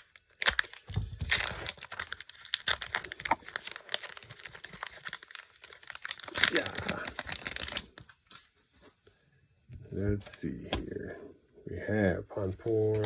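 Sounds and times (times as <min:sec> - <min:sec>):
foil wrapper crinkling and tearing: 0:00.0 - 0:08.5.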